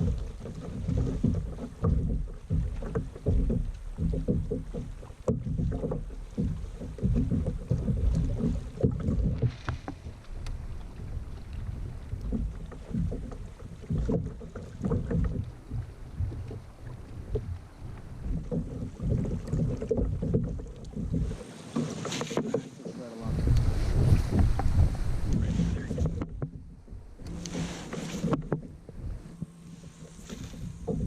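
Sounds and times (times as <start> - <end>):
faint ticks: 0.0 - 21.5, 27.2 - 31.0
wind buffeting microphone: 23.2 - 27.6.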